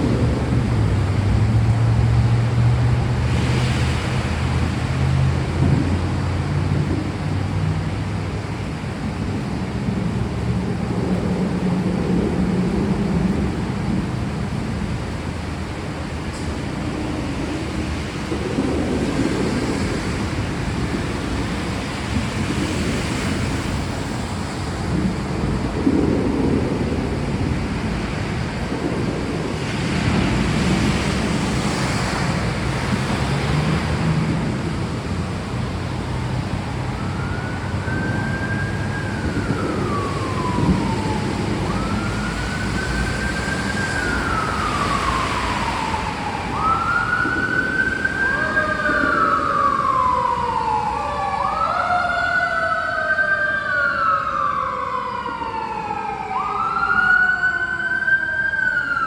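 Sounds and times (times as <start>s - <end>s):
second siren wailing: 0.0s - 59.0s
steady rain: 0.0s - 59.0s
siren wailing: 36.0s - 59.0s.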